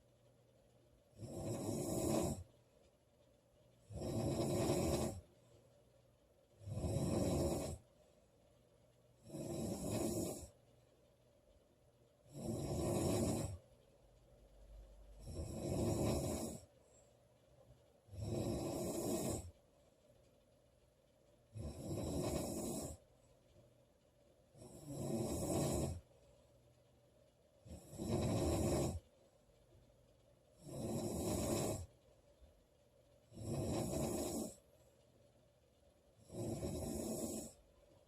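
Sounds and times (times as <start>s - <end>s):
woman snoring: 1.1s - 2.5s, 3.9s - 5.2s, 6.6s - 7.8s, 9.2s - 10.6s, 12.3s - 13.6s, 15.2s - 16.7s, 18.1s - 19.5s, 21.5s - 23.0s, 24.6s - 26.0s, 27.7s - 29.0s, 30.6s - 31.9s, 33.3s - 34.6s, 36.2s - 37.6s.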